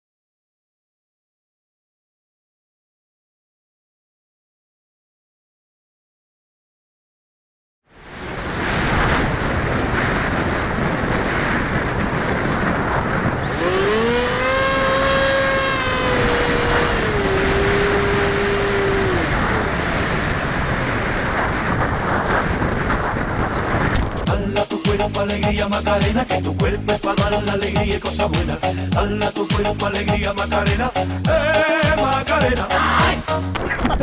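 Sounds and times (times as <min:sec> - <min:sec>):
wind rushing over microphone: 0:07.9 - 0:25.6
model plane electric motor whining: 0:13.2 - 0:19.6.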